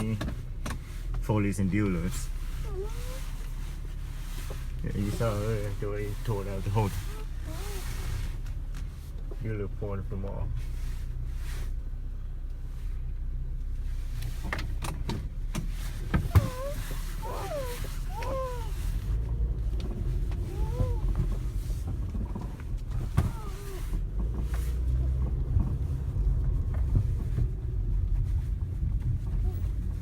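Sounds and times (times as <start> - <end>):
car engine and tyres rumbling: 0.0 - 30.0
short squeaks: 16.0 - 24.0.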